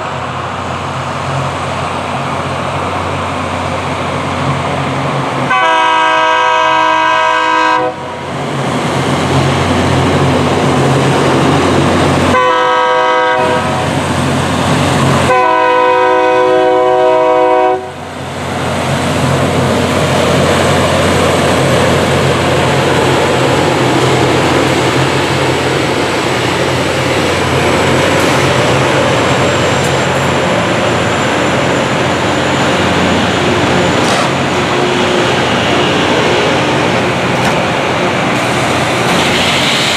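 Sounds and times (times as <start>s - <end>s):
train rumbling along track: 0.0s - 39.9s
locomotive horn blasts: 5.5s - 8.1s, 12.3s - 13.8s, 15.2s - 18.0s.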